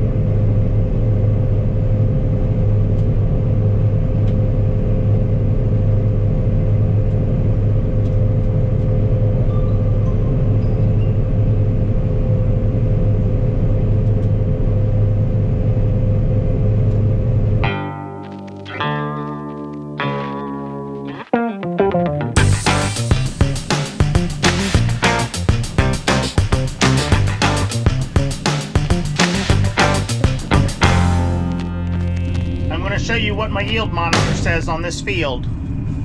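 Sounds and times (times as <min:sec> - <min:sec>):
steady whine: 0:22.4 - 0:33.9.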